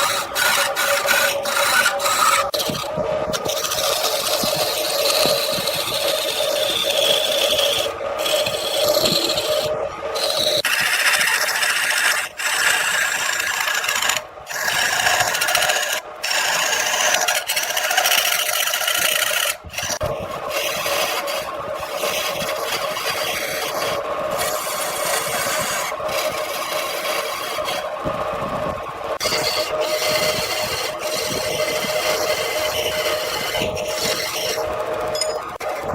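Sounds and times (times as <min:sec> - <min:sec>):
turning tool scraping wood: 0:00.0 - 0:35.9
wood lathe hum: 0:00.0 - 0:35.9.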